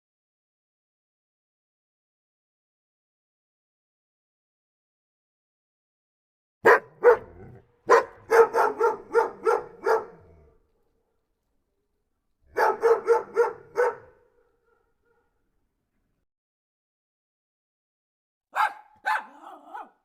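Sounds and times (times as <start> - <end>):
dog barking: 6.6 - 10.6, 12.5 - 15.5, 18.5 - 20.0.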